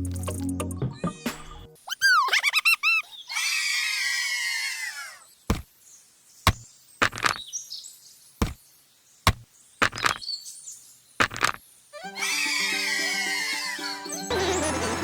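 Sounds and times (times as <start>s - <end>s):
music: 0.0s - 1.8s, 12.0s - 15.0s
sharp taps of small pieces: 6.5s - 7.4s, 8.4s - 8.7s, 9.3s - 10.2s, 11.2s - 11.6s.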